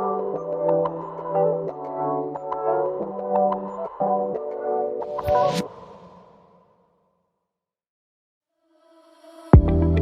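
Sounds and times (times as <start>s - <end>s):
music with held chords: 0.0s - 5.2s, 9.6s - 10.0s.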